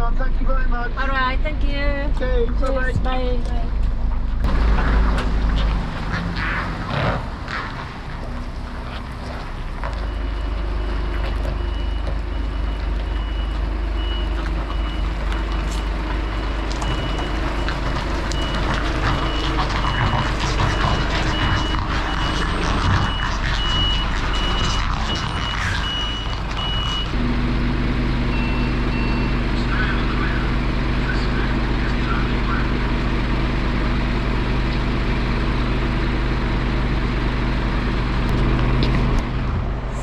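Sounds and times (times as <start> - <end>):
diesel engine running: 0.0 - 40.0
reversing alarm beeps: 9.9 - 32.8.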